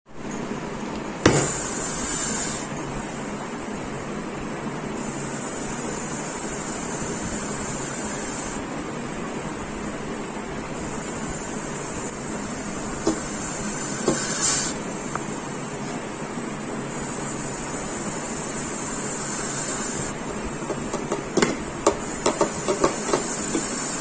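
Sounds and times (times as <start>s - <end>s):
snake hissing: 1.4s - 2.7s, 12.5s - 14.8s, 16.9s - 20.2s.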